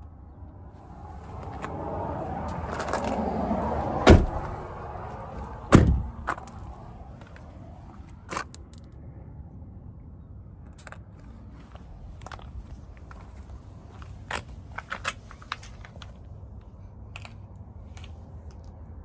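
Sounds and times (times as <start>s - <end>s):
doors slamming: 3.8s - 4.8s, 5.6s - 6.4s.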